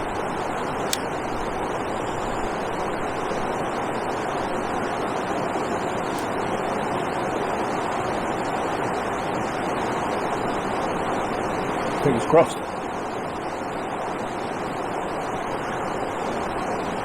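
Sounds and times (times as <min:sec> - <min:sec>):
sharp tick: 0:00.8 - 0:01.1.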